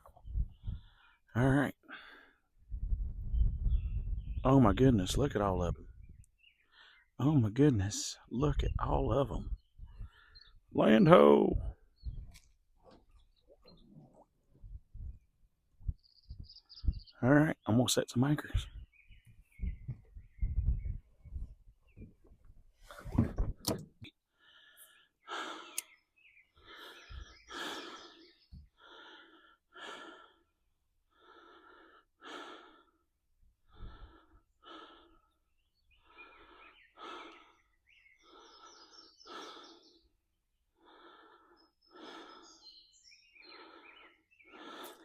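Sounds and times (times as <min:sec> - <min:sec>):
man breathing heavily: 0:00.5 - 0:02.7, 0:06.6 - 0:07.2, 0:09.9 - 0:10.7, 0:24.2 - 0:45.0.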